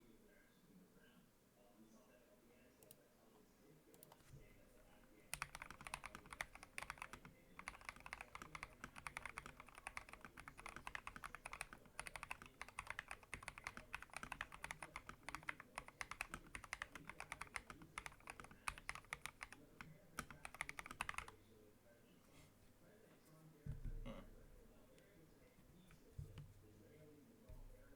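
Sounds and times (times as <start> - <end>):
mechanical keyboard typing: 5.3 - 21.3.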